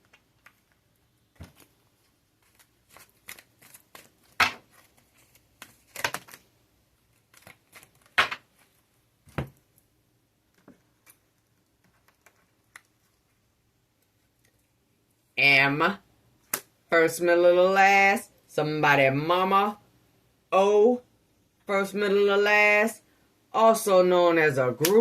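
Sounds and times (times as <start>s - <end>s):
cards being shuffled: 1.4s - 6.5s, 7.1s - 9.5s.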